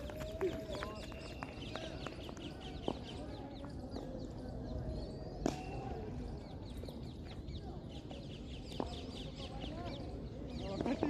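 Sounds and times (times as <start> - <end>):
murmur of distant voices: 0.0 - 11.0
small birds chirping: 0.0 - 11.0.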